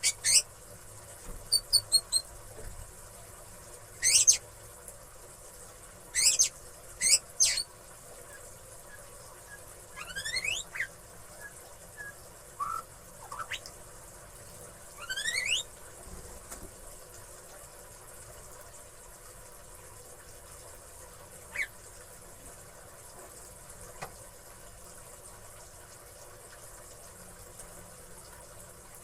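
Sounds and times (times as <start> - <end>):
bird whistled calls: 1.5 - 2.3, 4.0 - 4.4, 6.2 - 7.6, 8.9 - 13.6, 15.0 - 15.7.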